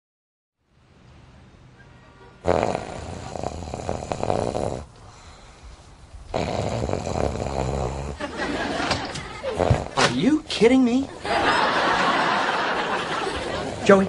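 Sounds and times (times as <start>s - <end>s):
man snoring loudly: 2.4s - 4.9s, 6.3s - 8.3s, 9.4s - 10.0s, 13.6s - 14.0s.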